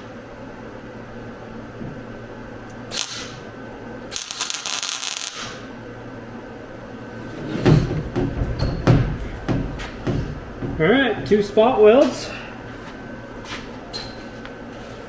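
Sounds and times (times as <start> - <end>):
welding crackling and hissing: 2.7 - 5.8
low knocks and handling: 7.0 - 13.9.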